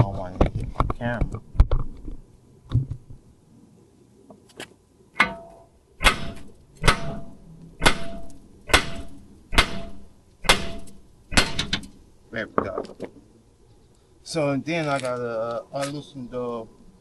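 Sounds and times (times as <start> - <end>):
metal blows on metal: 5.2 - 12.1.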